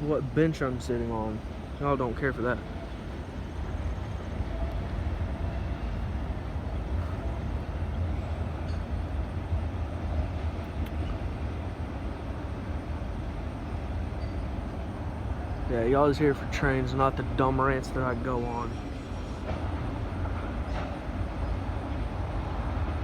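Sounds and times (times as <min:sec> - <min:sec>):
freight train wheels rumbling on rail: 0:00.0 - 0:23.0.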